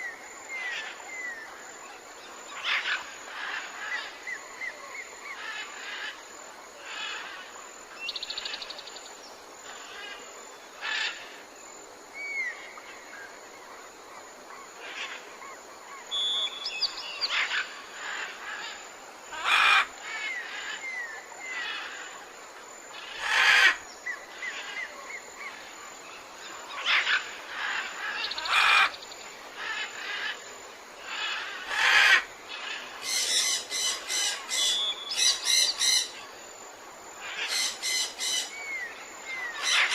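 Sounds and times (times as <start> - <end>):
steady background hiss: 0.0 - 39.9
birds calling: 31.0 - 36.2, 37.2 - 39.9.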